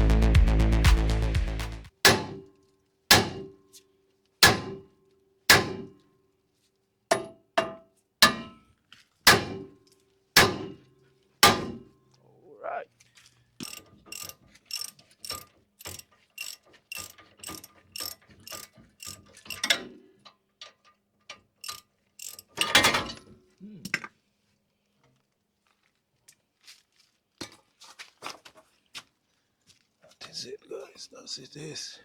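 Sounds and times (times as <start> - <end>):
ratchet wrench clicking: 13.6 - 19.8, 21.6 - 23.0.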